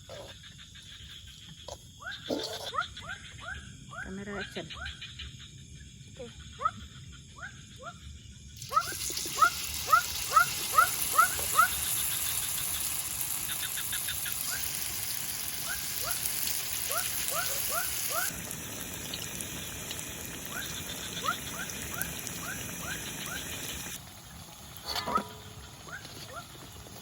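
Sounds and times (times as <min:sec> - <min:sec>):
animal chirping calls: 0:08.6 - 0:14.8, 0:15.6 - 0:18.3, 0:20.5 - 0:23.5.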